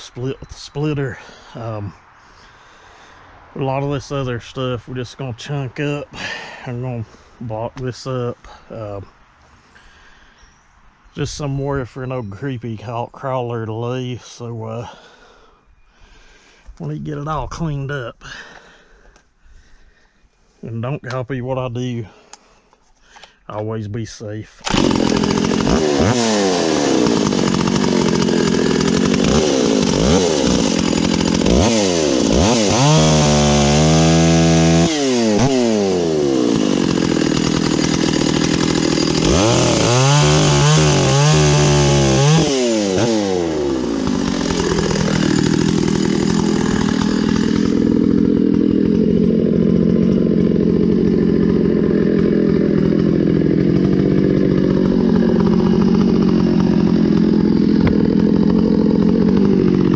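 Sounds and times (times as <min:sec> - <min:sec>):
chainsaw idling: 0:24.6 - 0:59.9
chainsaw revving and cutting wood: 0:24.6 - 0:59.9.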